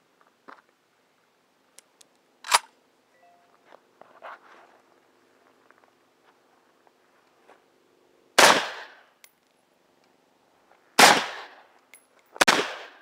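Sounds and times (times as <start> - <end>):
rifle shots: 8.4 - 9.0, 11.0 - 11.6, 12.4 - 13.0.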